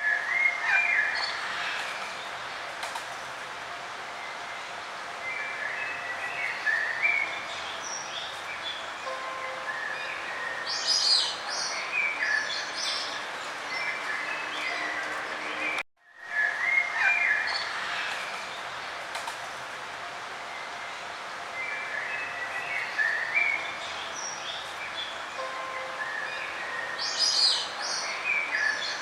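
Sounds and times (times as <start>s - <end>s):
songbirds chirping and whistling: 0.0s - 2.3s, 5.2s - 18.7s, 21.6s - 29.0s
steady background hiss: 0.0s - 29.0s.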